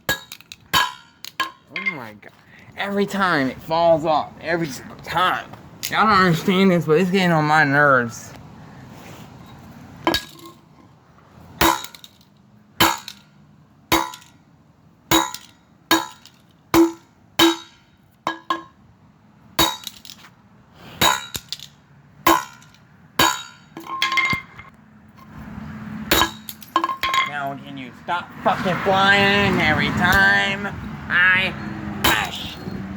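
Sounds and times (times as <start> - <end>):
toy car metallic clanks: 0.0 - 2.2, 21.0 - 24.8, 26.1 - 27.6.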